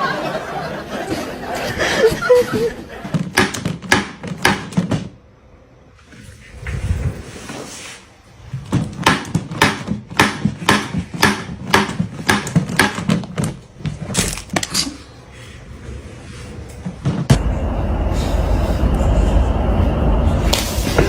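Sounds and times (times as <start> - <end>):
rapid sharp knocks: 3.2 - 5.0.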